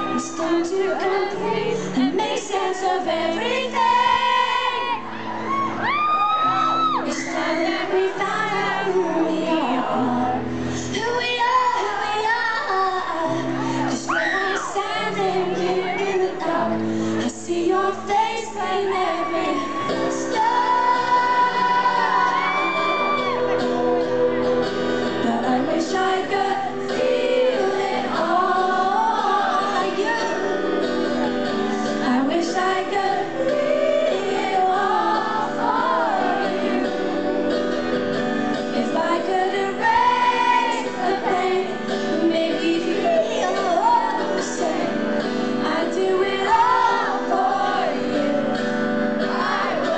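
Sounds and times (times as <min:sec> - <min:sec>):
woman singing lead vocal: 0:00.0 - 0:05.0, 0:06.3 - 0:49.9
live band playing: 0:18.1 - 0:49.9.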